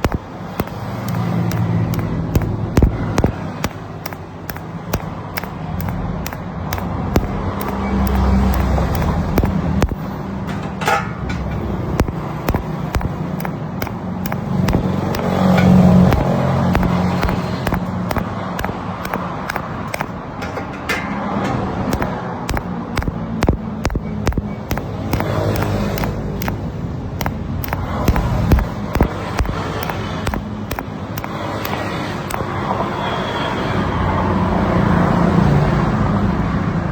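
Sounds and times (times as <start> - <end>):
sharp clicks or knocks: 0.0 - 32.5
machine rumble with low hum: 21.9 - 26.6.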